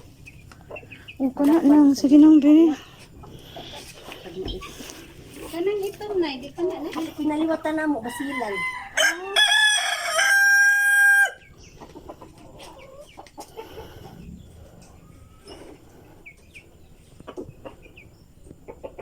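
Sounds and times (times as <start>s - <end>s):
chirps and clicks: 0.0s - 1.2s, 11.4s - 19.0s
rooster crowing: 8.0s - 11.4s.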